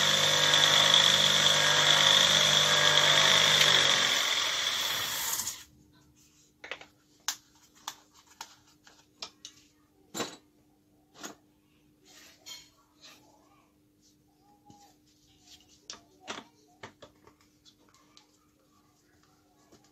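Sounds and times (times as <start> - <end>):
knife-sharpening machine running: 0.0 - 5.6.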